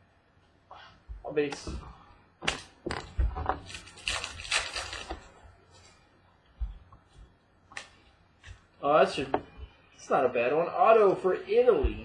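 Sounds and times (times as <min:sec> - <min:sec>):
wrapper tearing and crinkling: 0:03.6 - 0:05.4.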